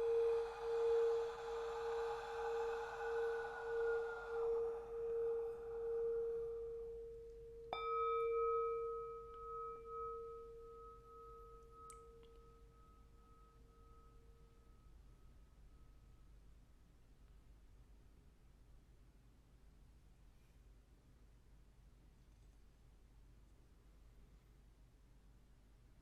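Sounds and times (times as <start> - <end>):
singing bowl struck: 0.0 - 14.0
singing bowl ringing: 0.0 - 15.9.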